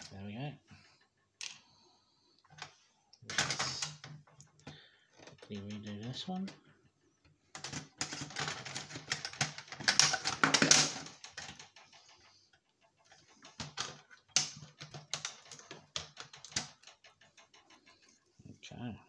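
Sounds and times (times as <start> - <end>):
plastic and metal parts clicking: 2.5 - 6.6, 7.5 - 18.0.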